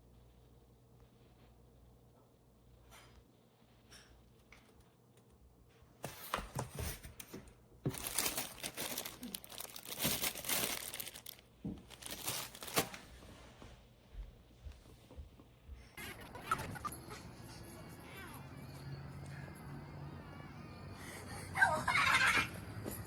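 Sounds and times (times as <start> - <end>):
faint steady hum: 0.0 - 6.0
material crinkling and rustling: 6.0 - 13.5.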